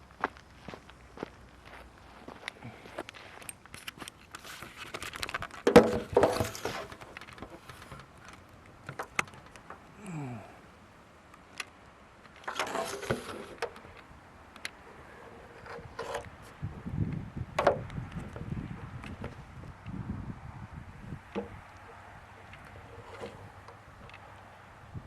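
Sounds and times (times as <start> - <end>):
rake scraping through brush: 3.8 - 8.4, 12.4 - 13.9, 14.9 - 16.3.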